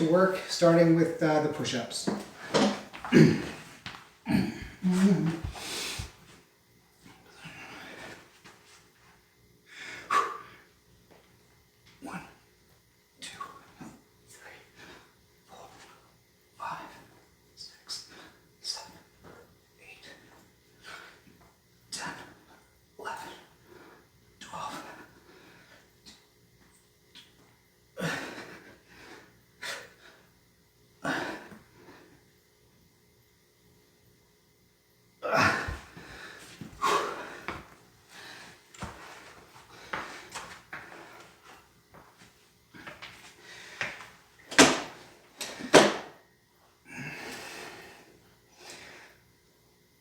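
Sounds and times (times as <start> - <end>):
man breathing hard: 4.3 - 6.2, 7.4 - 8.3, 9.6 - 10.7, 35.2 - 41.4, 42.7 - 44.0, 46.9 - 49.2.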